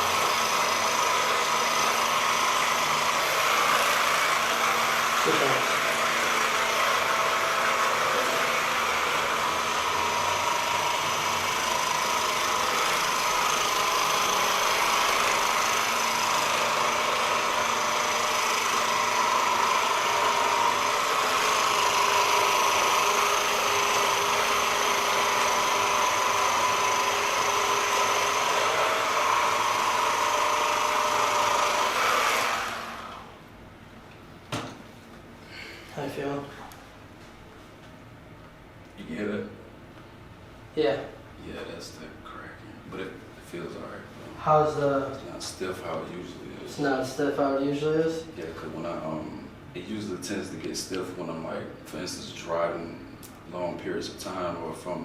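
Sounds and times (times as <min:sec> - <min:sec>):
massage gun motor whine: 0:00.0 - 0:33.6.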